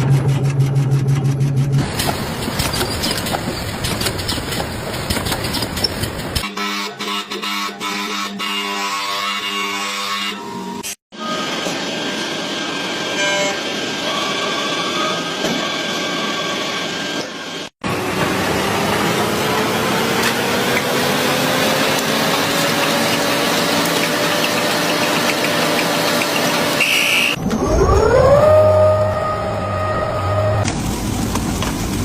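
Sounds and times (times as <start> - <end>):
whirring motor rising in pitch: 17.8 - 30.7
motor spinning up: 18.0 - 30.5.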